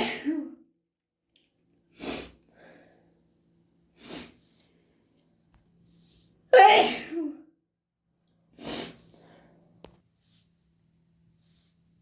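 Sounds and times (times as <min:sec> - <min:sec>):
person sneezing: 0:00.0 - 0:00.6, 0:06.6 - 0:07.4
nose sniffing: 0:02.0 - 0:02.4, 0:04.0 - 0:04.6, 0:08.6 - 0:09.1
faint breath: 0:02.0 - 0:03.3, 0:08.6 - 0:10.5.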